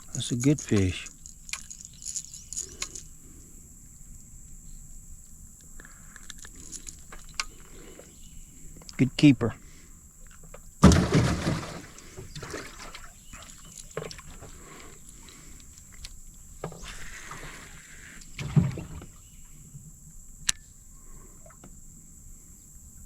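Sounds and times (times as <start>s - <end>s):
knocks and bumps on boat: 10.8s - 12.9s, 18.4s - 19.2s
sharp click: 20.4s - 20.7s.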